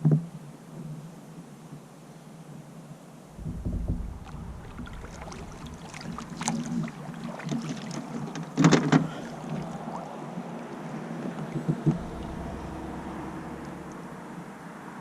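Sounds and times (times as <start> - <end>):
sharp splashes or knocks: 3.4 - 14.7
paddle splashing in water: 3.4 - 15.0.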